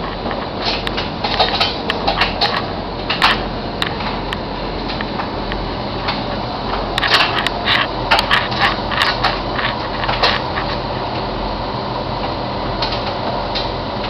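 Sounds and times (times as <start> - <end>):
washing machine running: 0.0 - 14.0.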